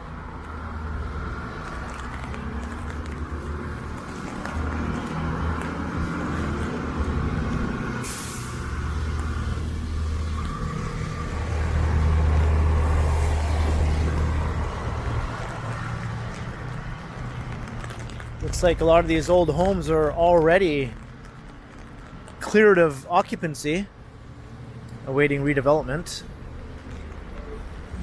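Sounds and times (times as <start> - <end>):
traffic on wet road: 0.0 - 28.0
short sharp hiss: 8.0 - 8.8.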